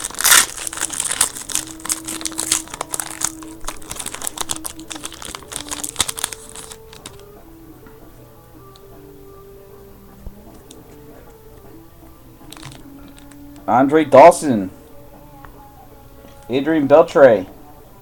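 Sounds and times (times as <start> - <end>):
wrapper tearing and crinkling: 0.0 - 7.2, 12.5 - 13.4
faint background music: 0.0 - 18.0.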